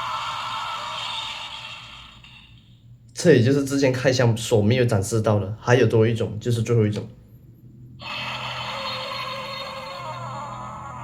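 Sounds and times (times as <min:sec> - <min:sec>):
toy speaker electronic sound effect: 0:08.0 - 0:11.0.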